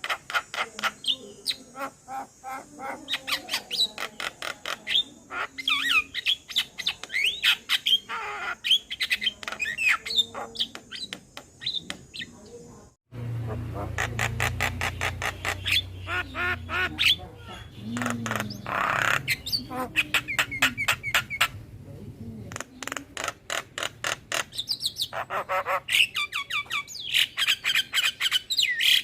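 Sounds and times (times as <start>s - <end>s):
myna calling: 0.0s - 29.0s
low hum: 13.1s - 18.7s.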